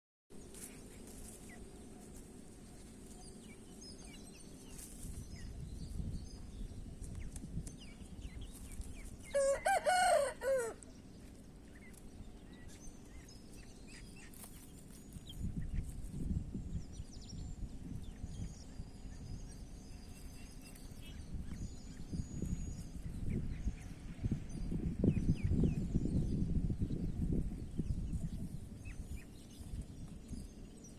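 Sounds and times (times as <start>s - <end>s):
rooster crowing: 9.3s - 10.8s.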